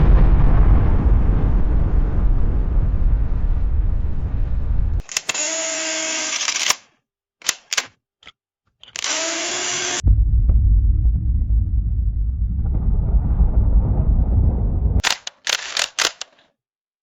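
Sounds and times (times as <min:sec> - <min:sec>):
deep rumble: 0:00.0 - 0:05.0, 0:10.0 - 0:15.0
camera motor whirring: 0:05.0 - 0:06.8, 0:08.9 - 0:10.0, 0:15.2 - 0:16.4
shutter clicks: 0:05.0 - 0:07.9, 0:15.0 - 0:16.5.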